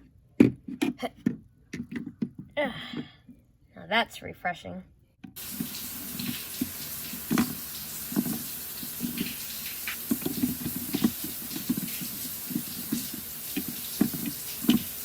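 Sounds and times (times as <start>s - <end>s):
water running from tap: 5.4s - 15.0s.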